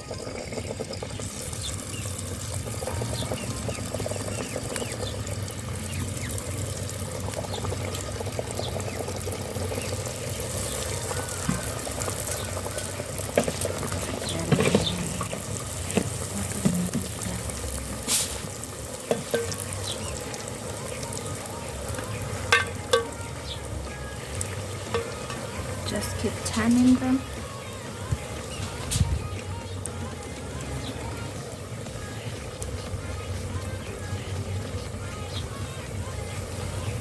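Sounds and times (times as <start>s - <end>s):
dough sizzling in hot oil: 0.0s - 37.0s
utensil clinking against pan: 19.1s - 19.6s, 22.5s - 23.2s.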